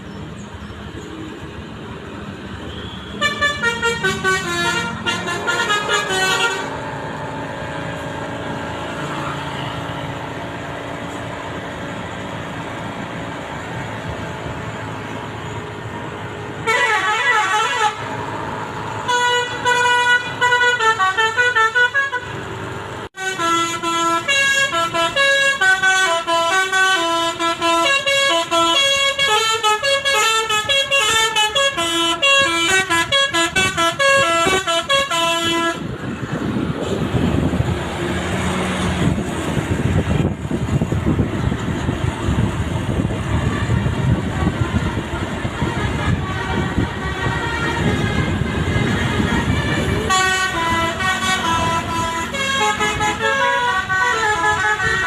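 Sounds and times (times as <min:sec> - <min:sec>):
bus horn playing a melody: 0:02.7 - 0:10.1, 0:16.6 - 0:22.6, 0:23.2 - 0:36.2, 0:42.4 - 0:55.0.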